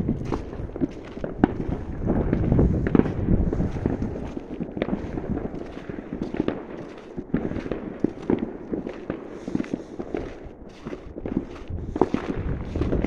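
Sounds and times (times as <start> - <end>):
fireworks crackling and banging: 0.0 - 13.0.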